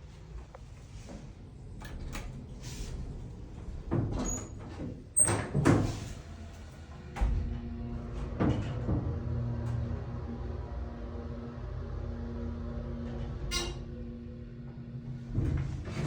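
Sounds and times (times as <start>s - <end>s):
elevator knocking and clunking: 1.6s - 10.0s, 14.7s - 16.0s.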